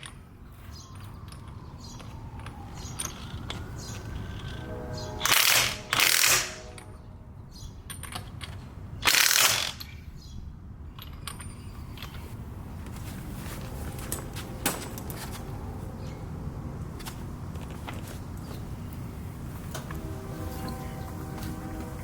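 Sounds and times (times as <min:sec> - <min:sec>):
loud tool bursts: 0:05.2 - 0:06.7, 0:09.0 - 0:09.8.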